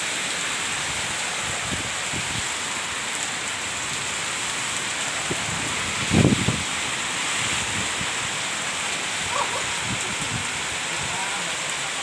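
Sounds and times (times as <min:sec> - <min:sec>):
heavy rain hiss: 0:00.0 - 0:12.0
strong wind: 0:00.6 - 0:03.0, 0:03.6 - 0:11.3
wind buffeting microphone: 0:04.0 - 0:11.1.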